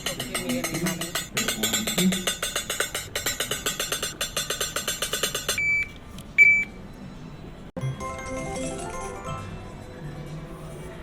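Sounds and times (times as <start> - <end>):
slot machine reels ticking: 0.0 - 5.8, 8.0 - 9.6
short electronic beeps: 5.6 - 6.8.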